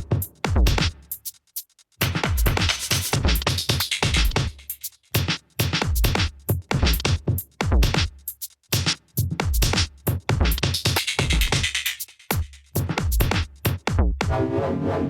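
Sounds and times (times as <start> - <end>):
drum machine hits: 0.0 - 1.0, 2.0 - 4.6.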